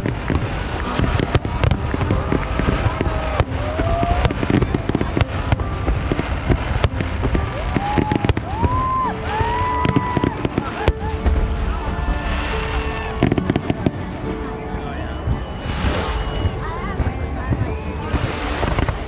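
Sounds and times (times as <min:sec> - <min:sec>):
fireworks booms and crackles: 0:00.0 - 0:14.4.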